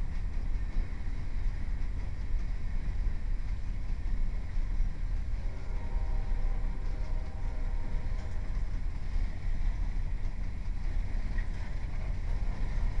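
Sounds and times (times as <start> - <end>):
freight train rumbling: 0.0 - 13.0
faint train horn chord: 5.0 - 9.8, 12.0 - 13.0.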